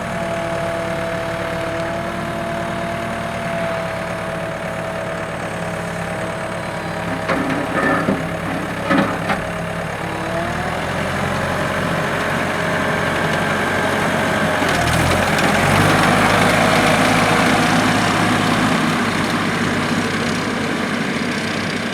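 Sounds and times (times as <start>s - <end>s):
diesel engine running: 0.1s - 21.9s
short knocks: 7.0s - 9.7s.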